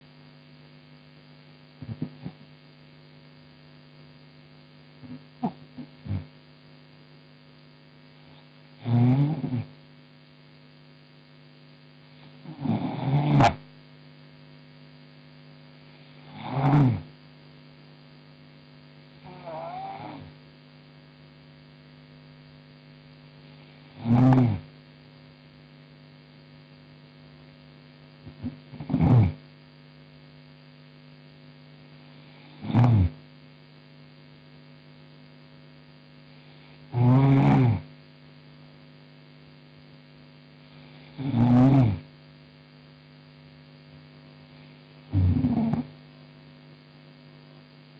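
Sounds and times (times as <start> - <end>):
low electrical hum: 0.0 - 47.9
woman snoring: 1.8 - 2.5, 5.0 - 6.3, 8.2 - 9.7, 12.2 - 13.6, 15.9 - 17.2, 19.2 - 20.4, 23.4 - 24.7, 28.2 - 29.4, 32.0 - 33.2, 36.4 - 37.9, 40.6 - 42.1, 44.5 - 46.0.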